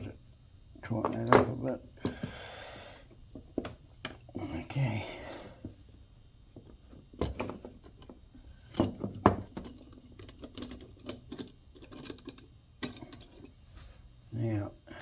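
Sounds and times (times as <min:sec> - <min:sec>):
metal parts and tools clicking: 0:09.6 - 0:13.5.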